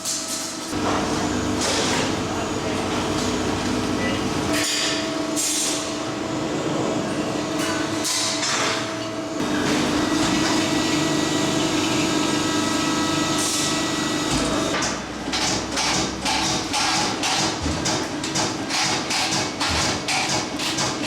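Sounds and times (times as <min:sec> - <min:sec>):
machine hum: 0:00.7 - 0:08.2, 0:08.9 - 0:14.9.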